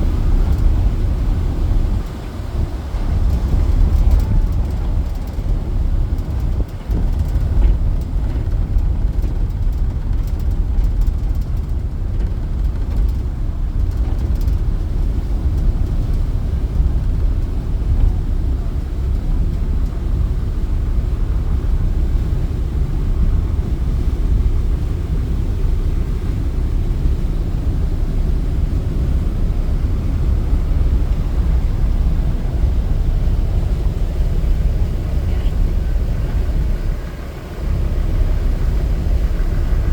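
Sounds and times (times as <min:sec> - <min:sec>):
ferry engine rumble: 0:00.0 - 0:39.9.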